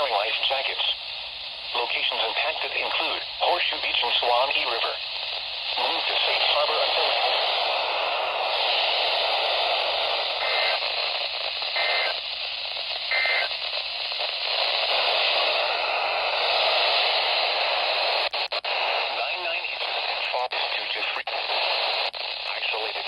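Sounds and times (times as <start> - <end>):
radio static hiss: 0.0 - 23.0
two-tone data bursts: 10.2 - 12.3, 13.0 - 14.1.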